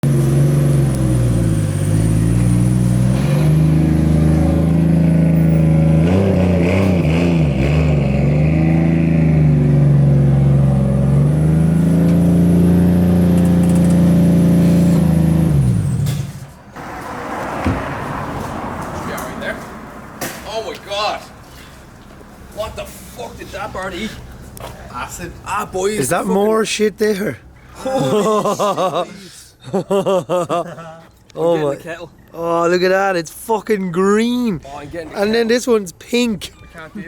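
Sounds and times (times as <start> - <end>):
car engine running: 0.0 - 16.0.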